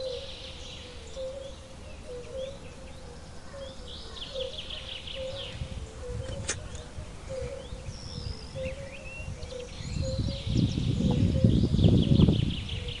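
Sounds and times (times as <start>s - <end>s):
birds chirping and trilling: 0.0s - 13.0s
sharp click: 6.3s - 6.8s.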